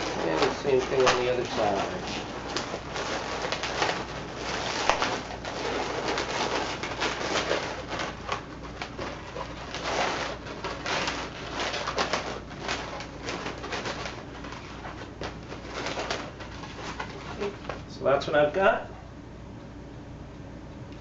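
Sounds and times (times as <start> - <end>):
balloons squeaking and rubbing: 0.0 - 17.9.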